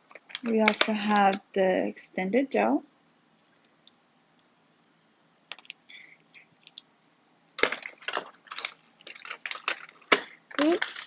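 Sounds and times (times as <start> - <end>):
small plastic items clicking and rattling: 0.0 - 1.5, 6.6 - 6.8, 7.5 - 11.0.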